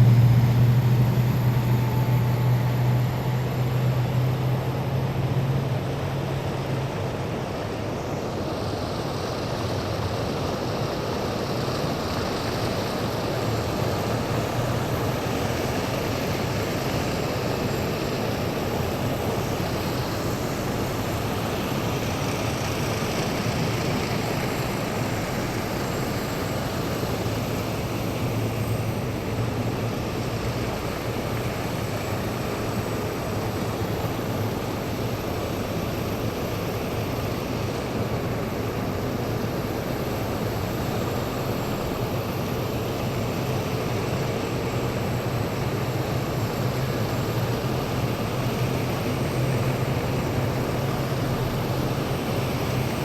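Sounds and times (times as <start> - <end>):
heavy vehicles rumbling past: 0.0 - 7.1.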